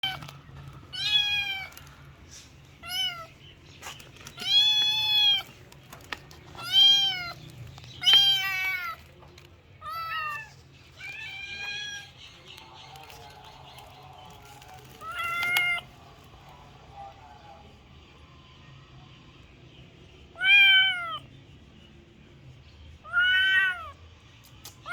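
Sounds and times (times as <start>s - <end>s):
kitten meowing: 2.8s - 3.3s, 4.4s - 5.4s, 6.6s - 7.4s, 8.0s - 9.0s, 20.4s - 21.2s, 23.1s - 24.0s.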